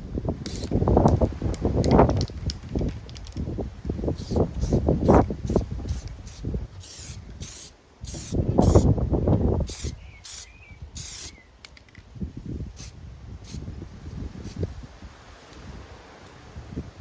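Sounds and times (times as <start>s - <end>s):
wind buffeting microphone: 0.0s - 17.0s
spray paint hissing: 0.4s - 3.4s, 4.0s - 9.0s, 9.6s - 11.4s, 12.7s - 13.7s, 14.4s - 14.7s.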